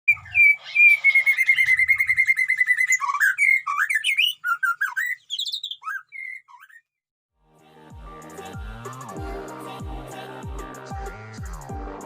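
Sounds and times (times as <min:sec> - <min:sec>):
bird singing whistled phrases: 0:00.1 - 0:06.9.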